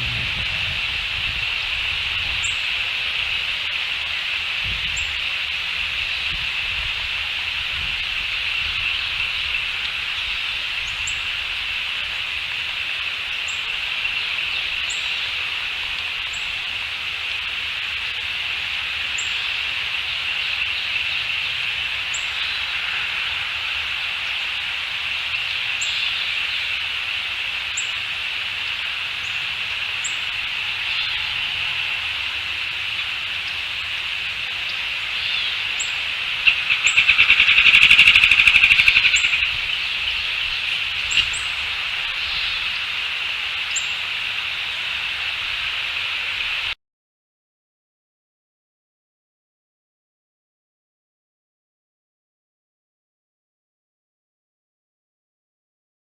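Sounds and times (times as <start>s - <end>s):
bird high thin falling calls: 34.5s - 44.2s.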